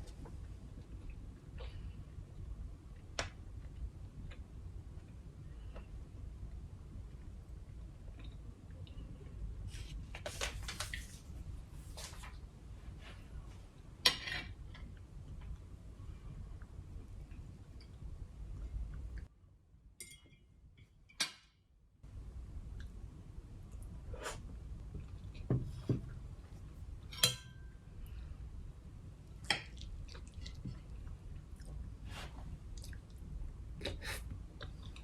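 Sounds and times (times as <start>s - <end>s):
cutlery clinking against dish: 27.1s - 27.7s
person chewing food: 29.6s - 31.8s, 32.7s - 35.0s.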